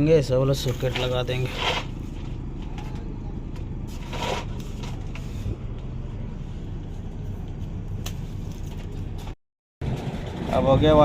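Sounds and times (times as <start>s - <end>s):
engine idling hum: 0.0s - 11.0s.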